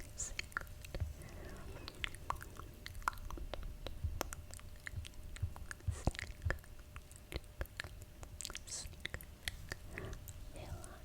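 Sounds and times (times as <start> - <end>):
soft hiss: 0.0 - 6.2
wet lip and tongue clicks: 0.0 - 10.4.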